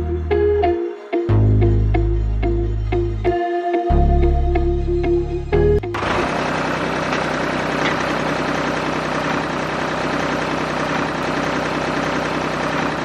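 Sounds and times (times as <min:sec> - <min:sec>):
small tractor engine running: 0:05.9 - 0:13.0.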